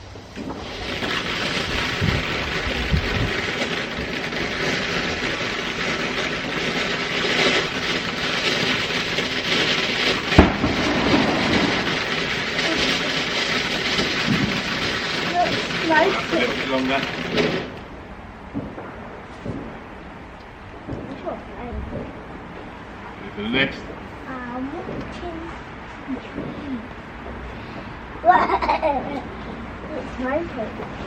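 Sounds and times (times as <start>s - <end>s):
firework hissing and crackling: 0.0s - 31.0s
firework pops: 0.3s - 17.9s, 18.5s - 22.8s, 24.8s - 26.6s
loud crack: 0.3s - 21.3s.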